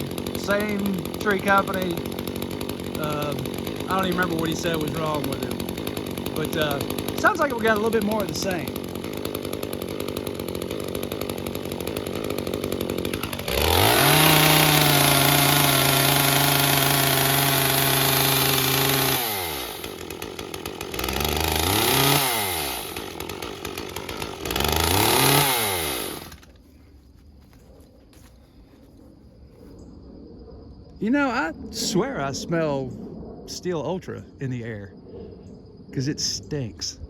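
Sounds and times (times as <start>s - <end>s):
chainsaw idling and revving: 0.0s - 26.7s.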